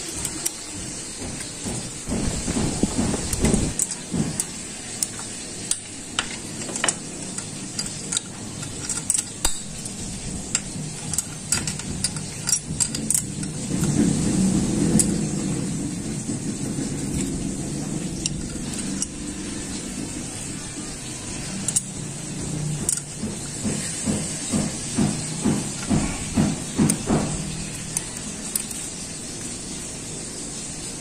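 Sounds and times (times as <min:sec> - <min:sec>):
metal tools clinking on engine: 0:00.0 - 0:14.0, 0:18.0 - 0:19.7, 0:21.5 - 0:28.9.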